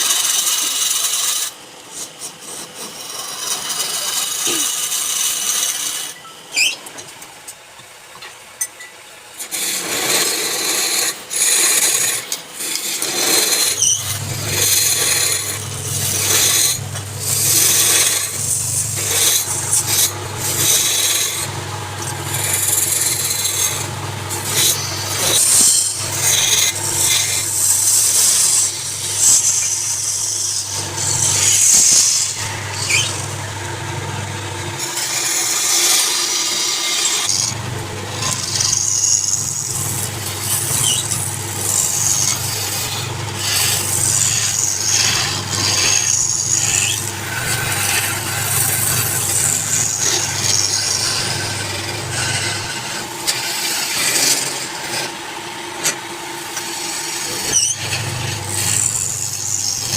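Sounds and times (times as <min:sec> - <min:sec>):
wood lathe motor hum: 0:00.0 - 0:06.7, 0:09.4 - 0:59.9
tool scraping spinning wood: 0:00.0 - 0:07.2, 0:09.4 - 0:59.9.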